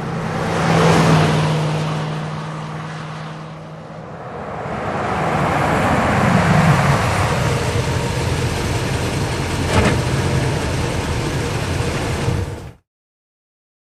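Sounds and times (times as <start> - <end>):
truck engine running: 5.1 - 12.8.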